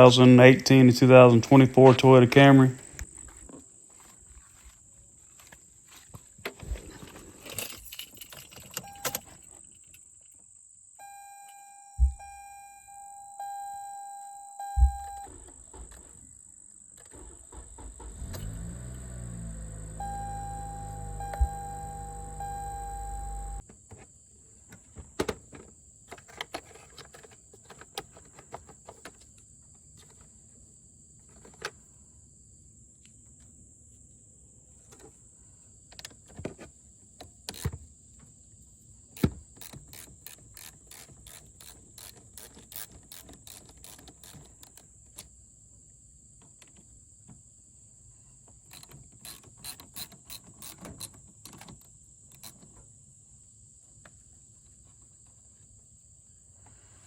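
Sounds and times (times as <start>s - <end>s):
high-pitched whine: 19.9s - 23.6s
ratchet-like mechanical clicks: 39.2s - 44.9s, 48.7s - 51.6s.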